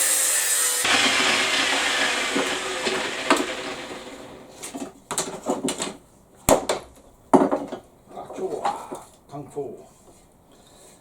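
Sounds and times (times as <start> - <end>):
power tool running: 0.0 - 4.6.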